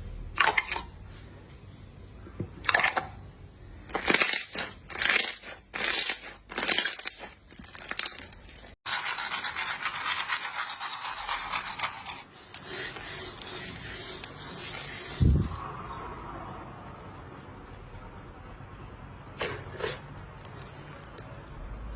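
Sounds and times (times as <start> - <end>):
slime squishing and crackling: 3.9 - 8.8.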